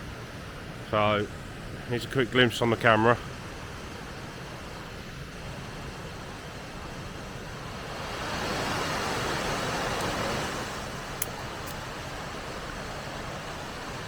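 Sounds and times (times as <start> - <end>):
waterfall roaring: 0.0 - 14.0
sharp click: 11.2 - 11.8.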